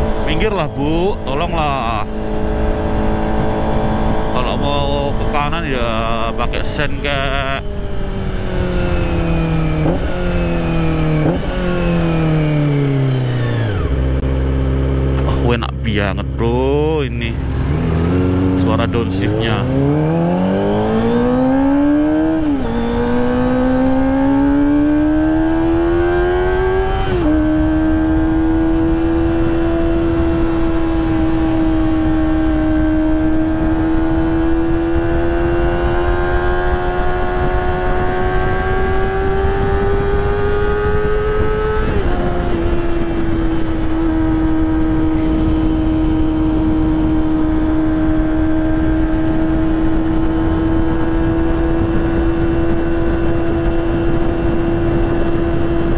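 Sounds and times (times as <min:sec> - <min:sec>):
motorcycle engine accelerating: 0:00.0 - 0:55.9
wind rushing: 0:25.5 - 0:55.9.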